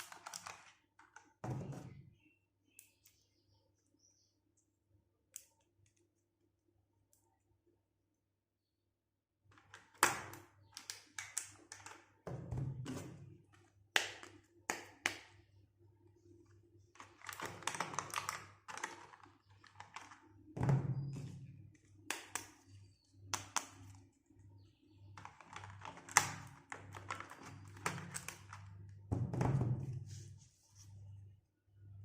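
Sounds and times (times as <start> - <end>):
packaging rustling: 17.0 - 20.2.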